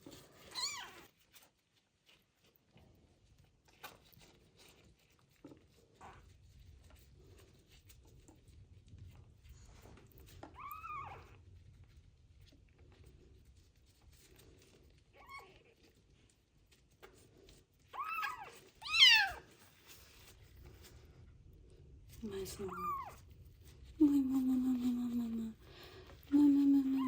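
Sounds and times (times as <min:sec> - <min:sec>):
kitten meowing: 0:10.6 - 0:11.3, 0:18.0 - 0:19.4.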